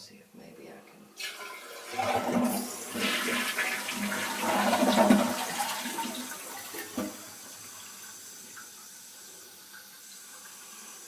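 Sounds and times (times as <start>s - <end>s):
toilet flushing: 1.1s - 11.0s.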